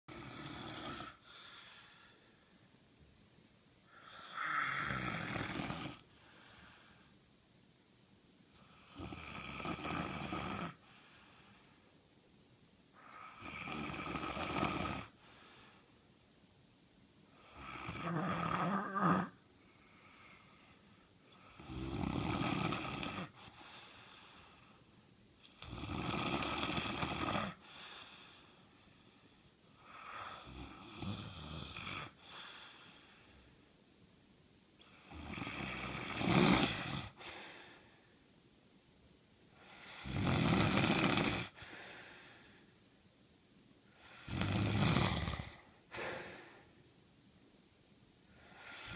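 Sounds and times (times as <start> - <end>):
person snoring: 0.1 - 2.2, 3.9 - 7.1, 8.6 - 11.1, 13.0 - 15.7, 17.4 - 20.6, 21.3 - 24.2, 25.4 - 28.4, 29.8 - 33.3, 34.8 - 37.9, 39.6 - 42.6, 43.9 - 46.8, 48.3 - 48.9
quiet breathing: 0.1 - 7.5, 8.2 - 16.4, 17.1 - 34.0, 34.7 - 48.9.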